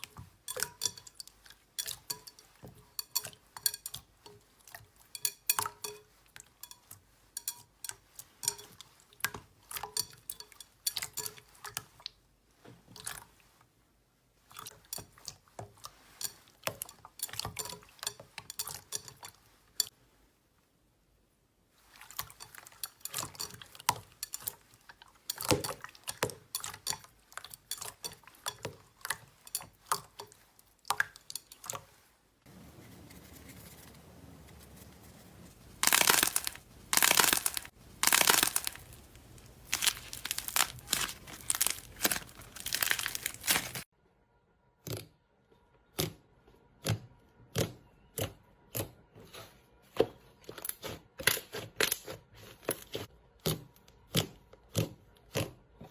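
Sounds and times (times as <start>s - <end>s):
slime squelching by hand: 21.8s - 33.1s, 34.0s - 43.9s.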